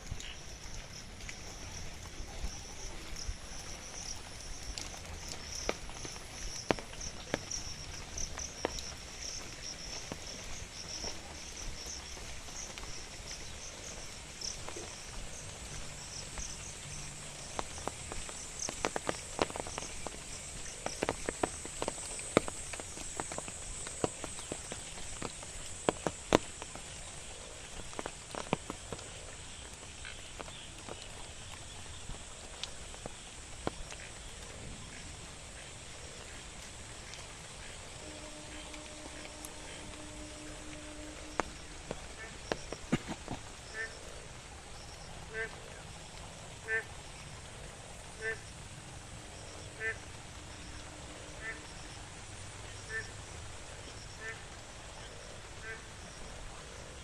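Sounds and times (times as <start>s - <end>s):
insect trill: 0.0s - 28.8s, 37.0s - 45.2s.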